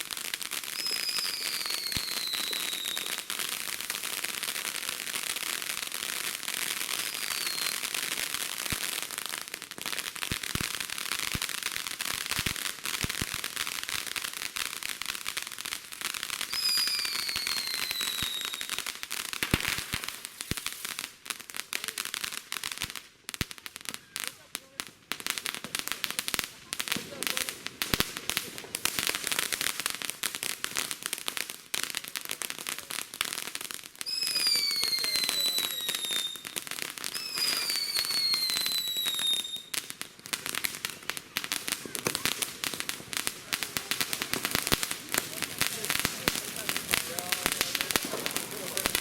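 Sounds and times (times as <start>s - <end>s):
fireworks crackling: 0.0s - 49.0s
falling firework whistle: 0.6s - 3.3s, 6.9s - 8.0s, 16.4s - 21.0s, 34.0s - 49.0s.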